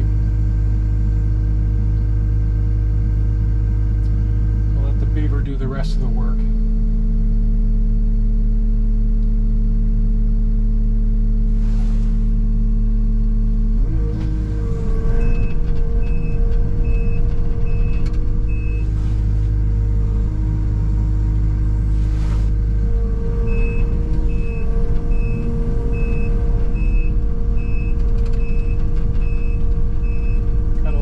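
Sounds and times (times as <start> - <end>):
machine engine running: 10.7 - 31.0
backup alarm beeping: 14.9 - 20.0, 22.5 - 31.0.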